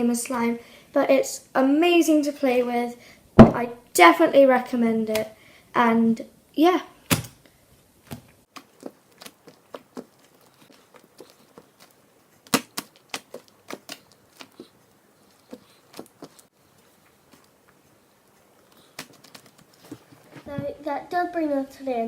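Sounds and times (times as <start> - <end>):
slime clicking and popping: 12.4 - 14.6.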